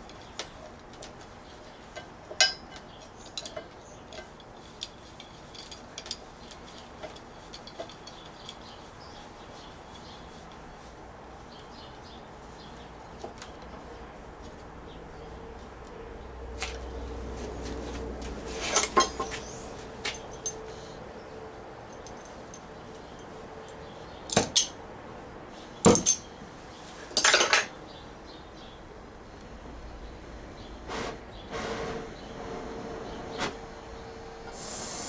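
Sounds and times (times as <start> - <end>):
metal tools clinking and clanking: 2.0 - 8.8, 18.6 - 20.6, 21.9 - 23.3, 24.2 - 24.8, 25.8 - 26.3, 27.1 - 27.8.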